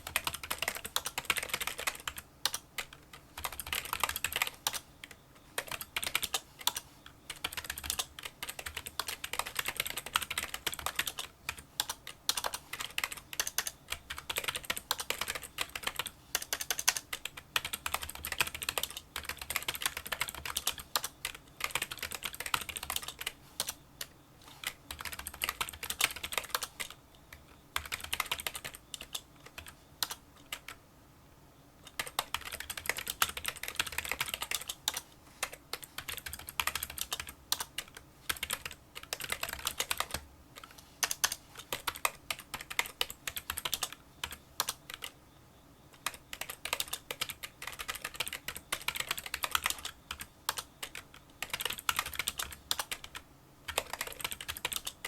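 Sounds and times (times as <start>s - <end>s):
fast keyboard typing: 0.0s - 27.0s, 27.8s - 30.8s, 31.9s - 45.2s, 46.0s - 55.0s.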